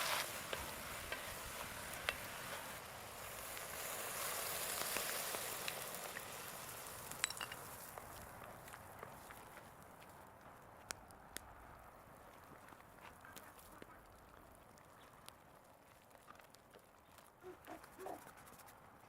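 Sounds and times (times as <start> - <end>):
food sizzling with pops: 0.0 - 9.8.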